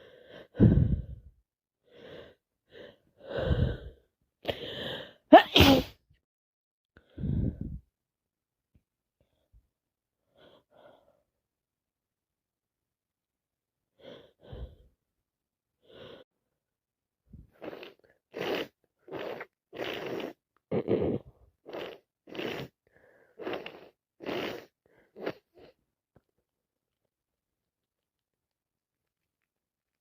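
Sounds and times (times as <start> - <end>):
faint breaths: 0.0 - 1.3
woman sneezing and gasping: 4.5 - 6.0.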